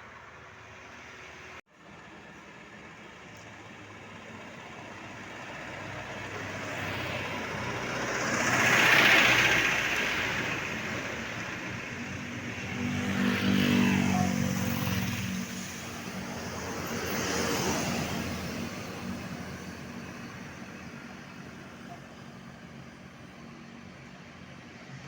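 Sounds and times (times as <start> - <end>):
heavy vehicle passing: 4.9 - 22.4
vehicle passing: 5.4 - 22.0.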